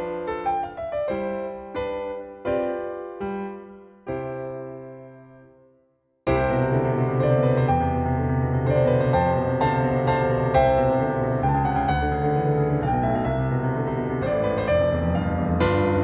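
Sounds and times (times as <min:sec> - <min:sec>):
piano music: 0:00.0 - 0:05.6, 0:06.3 - 0:16.0
bass: 0:06.3 - 0:16.0.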